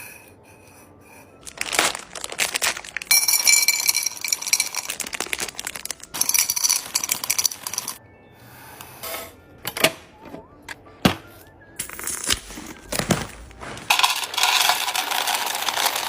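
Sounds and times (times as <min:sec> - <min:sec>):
plastic packaging crinkling: 0:01.4 - 0:08.0.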